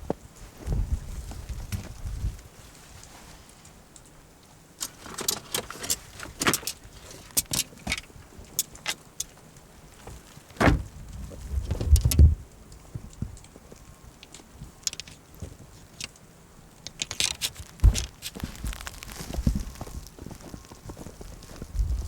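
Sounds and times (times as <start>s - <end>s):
thump: 10.6s - 10.9s
small hard objects clicking and jingling: 13.4s - 16.2s, 16.8s - 21.6s.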